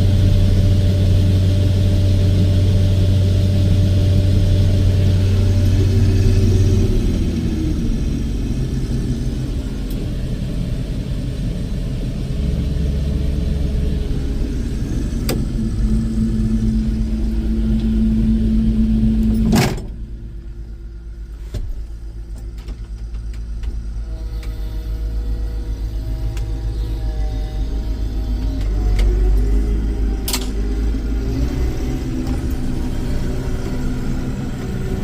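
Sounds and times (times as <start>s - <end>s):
harvester engine from inside cab: 0.0s - 35.0s
steady hum: 0.0s - 35.0s.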